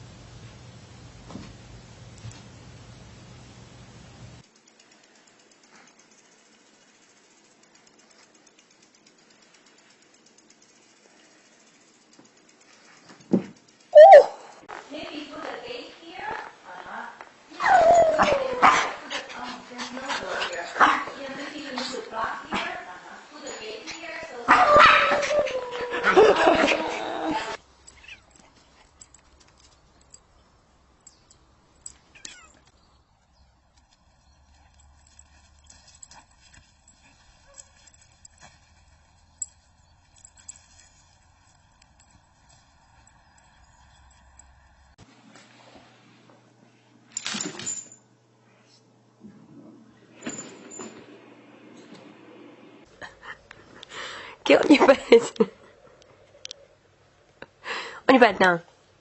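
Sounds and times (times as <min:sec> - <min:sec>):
small clicks: 0:04.4 - 0:13.9, 0:31.0 - 0:32.8
light irregular ticks: 0:04.4 - 0:14.0, 0:27.6 - 0:32.8, 0:33.6 - 0:45.0, 0:55.3 - 0:56.6.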